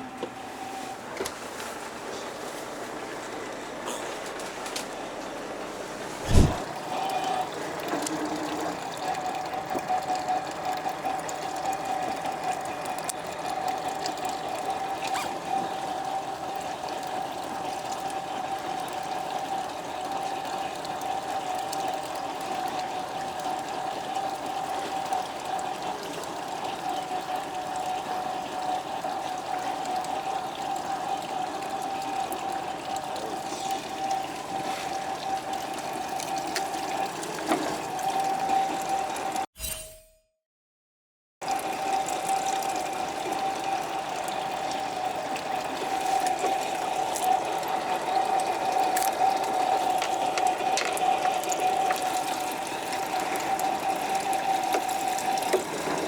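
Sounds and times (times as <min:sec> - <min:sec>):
water running and splashing: 0:01.4 - 0:39.4, 0:41.4 - 0:56.0
steady hum: 0:06.2 - 0:06.7.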